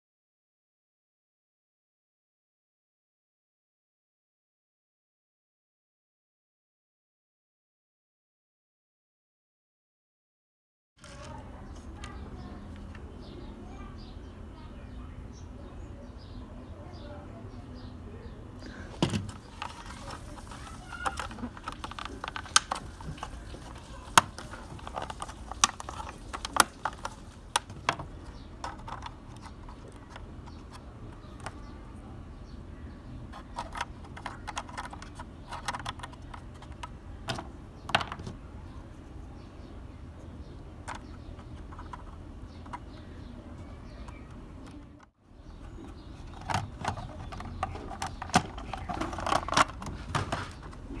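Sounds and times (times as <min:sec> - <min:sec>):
toy car parts clicking: 0:18.9 - 0:31.6, 0:33.3 - 0:38.4, 0:46.1 - 0:50.8.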